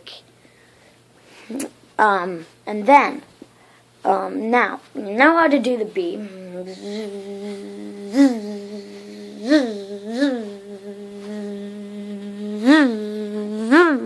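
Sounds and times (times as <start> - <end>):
person humming like a bee: 6.1 - 14.0.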